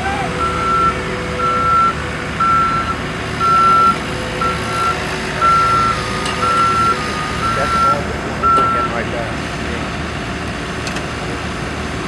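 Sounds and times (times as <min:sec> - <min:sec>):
machine engine running: 0:00.0 - 0:12.0
back-up alarm beeping: 0:00.4 - 0:09.1.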